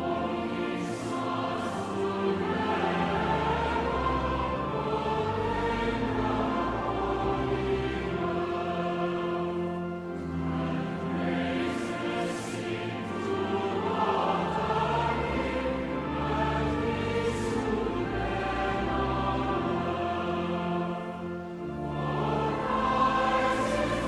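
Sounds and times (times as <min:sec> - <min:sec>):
choir singing: 0:00.0 - 0:24.0.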